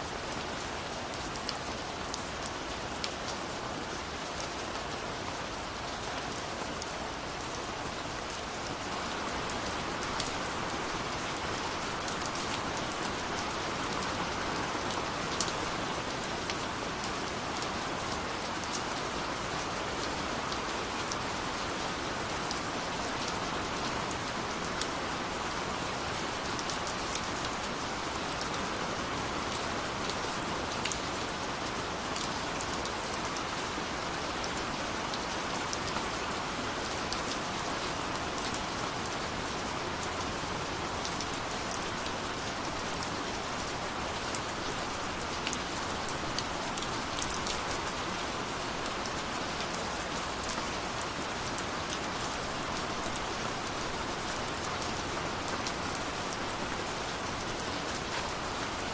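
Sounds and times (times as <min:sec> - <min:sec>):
steady rain falling: 0:00.0 - 0:58.9.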